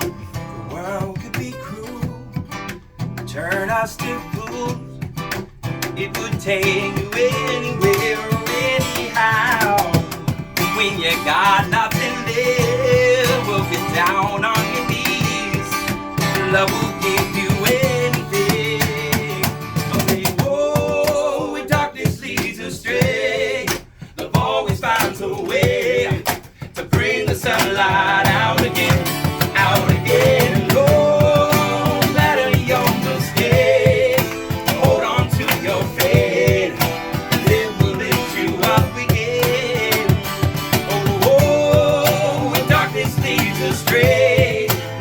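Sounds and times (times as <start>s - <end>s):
guitar: 0.0s - 45.0s
person singing: 26.9s - 45.0s.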